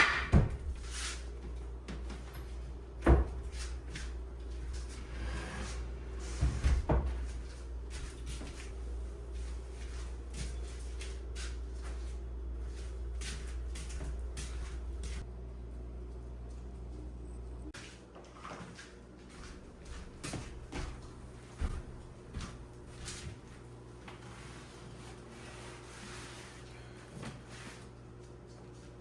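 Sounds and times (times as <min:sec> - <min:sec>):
steady low hum: 0:00.0 - 0:17.8.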